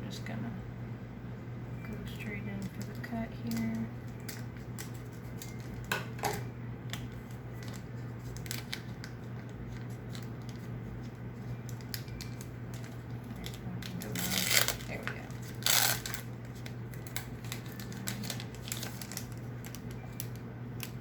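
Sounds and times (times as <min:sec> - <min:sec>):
foil wrapper crinkling: 0:02.6 - 0:05.9, 0:06.8 - 0:21.0
scissors snipping foil wrapper: 0:02.7 - 0:05.9, 0:06.9 - 0:10.6, 0:11.6 - 0:21.0.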